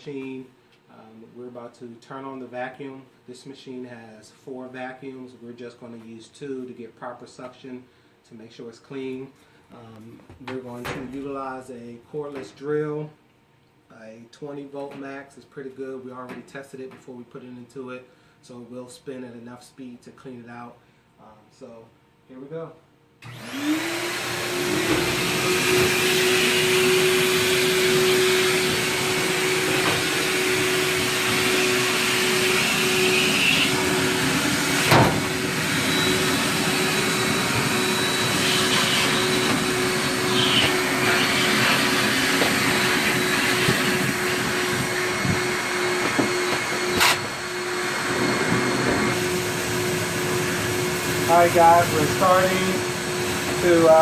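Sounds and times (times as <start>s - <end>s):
vacuum motors whining: 23.2s - 54.0s
sharp knocks: 34.9s - 35.3s.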